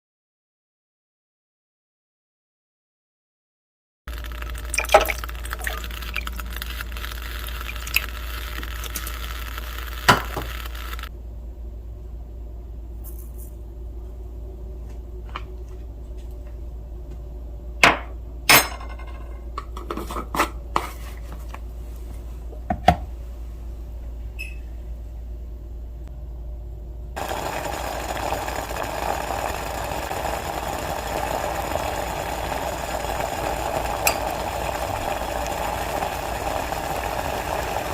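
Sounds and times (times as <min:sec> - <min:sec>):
rush of pouring liquid: 0:04.1 - 0:11.1, 0:27.2 - 0:37.9.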